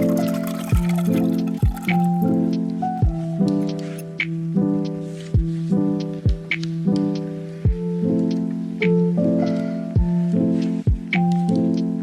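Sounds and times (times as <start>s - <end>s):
held chords: 0.0s - 4.1s.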